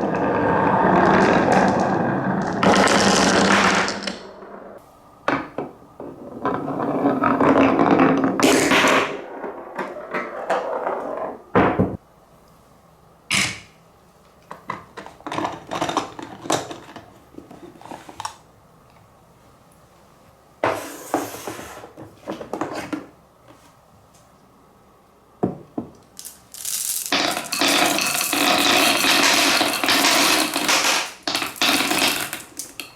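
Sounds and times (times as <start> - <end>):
marbles rattling rolling: 0.0 - 4.7, 26.2 - 32.9
marbles clacking on wooden run: 26.2 - 32.9.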